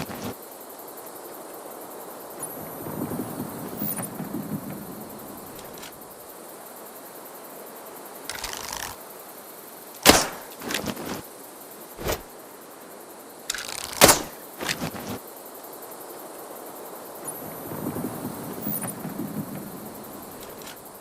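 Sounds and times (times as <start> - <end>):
bow shot rustle: 0.0 - 0.3, 8.3 - 9.0, 10.0 - 11.2, 12.0 - 12.3, 13.5 - 15.2
bow string snap: 10.0 - 11.1.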